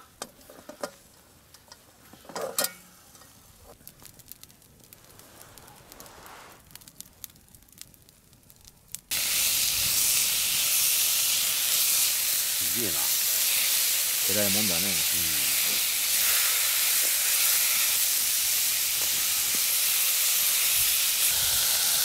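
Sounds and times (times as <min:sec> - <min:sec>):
faint crackles and clicks: 0:00.2 - 0:09.1
loud sizzling hiss: 0:09.1 - 0:22.0.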